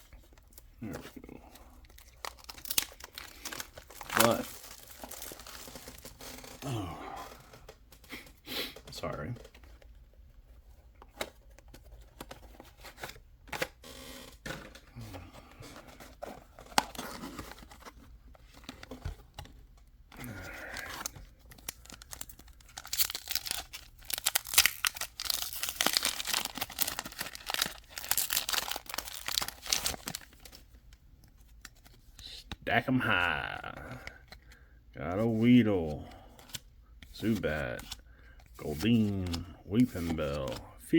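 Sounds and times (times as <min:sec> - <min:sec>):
foil wrappers tearing and crinkling: 0:01.9 - 0:06.6, 0:20.2 - 0:30.4.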